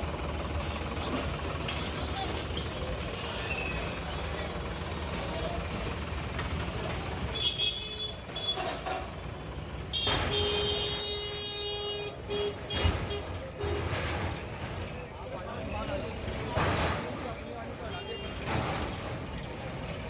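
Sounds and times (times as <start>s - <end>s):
vehicle engines rumbling: 0.0s - 20.0s
vehicle horn honking: 7.3s - 8.7s, 9.9s - 13.9s.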